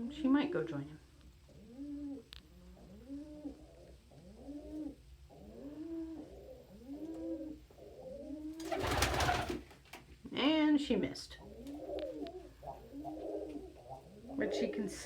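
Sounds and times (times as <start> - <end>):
pigeons cooing: 1.3 - 9.7, 11.4 - 15.0
pigeon wings flapping: 8.6 - 10.1.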